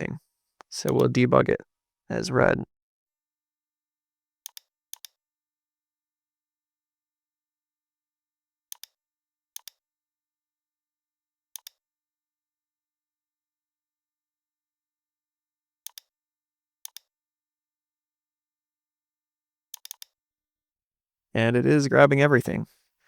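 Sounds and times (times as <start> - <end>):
computer mouse clicking: 0.8 - 1.1, 4.5 - 5.2, 8.7 - 9.0, 11.6 - 11.8, 15.9 - 16.1, 16.9 - 17.1, 19.8 - 20.2.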